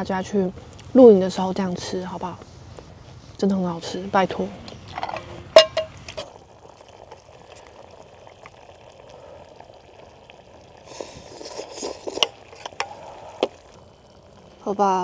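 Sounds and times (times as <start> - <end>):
utensil clinking against pot: 4.9 - 6.0
food tipped into pot: 4.9 - 6.3
soup simmering and bubbling: 4.9 - 15.0.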